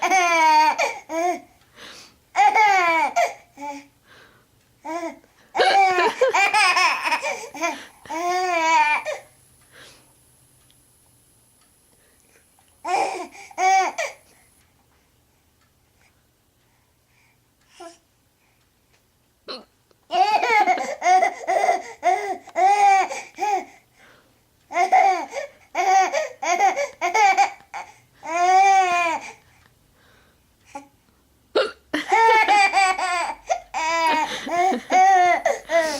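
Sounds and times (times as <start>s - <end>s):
baby laughing: 0.0s - 1.0s, 5.6s - 9.2s, 20.1s - 23.2s, 32.0s - 35.9s
woman hiccuping: 19.5s - 19.7s, 31.6s - 31.9s.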